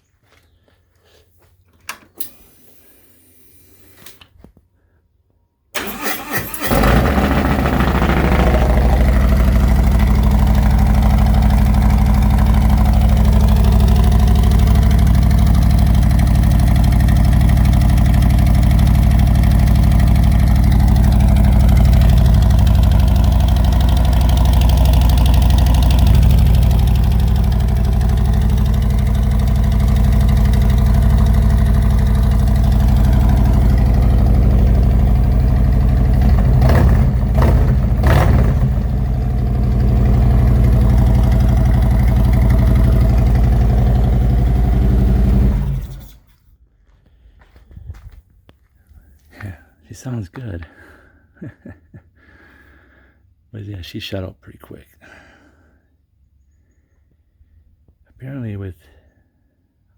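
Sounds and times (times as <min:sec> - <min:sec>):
motorcycle starter cranking: 0:05.8 - 0:35.1
motorcycle engine idling loudly: 0:06.6 - 0:46.0.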